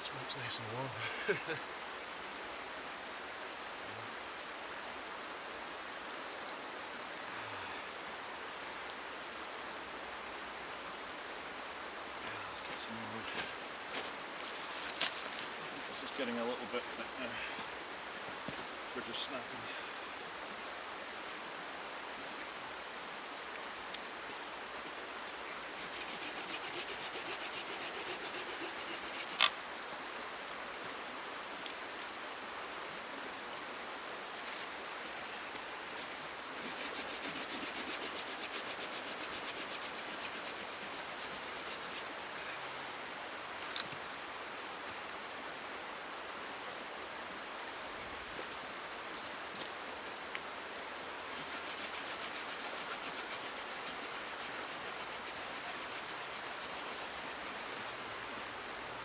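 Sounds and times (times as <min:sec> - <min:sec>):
hand saw rasping through branch: 0:25.8 - 0:29.5, 0:36.6 - 0:42.0, 0:51.3 - 0:58.5.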